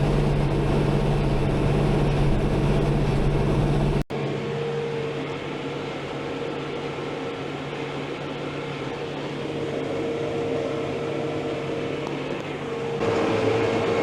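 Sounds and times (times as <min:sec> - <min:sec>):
tractor engine running: 0:00.0 - 0:04.1
constant whine: 0:00.0 - 0:14.0.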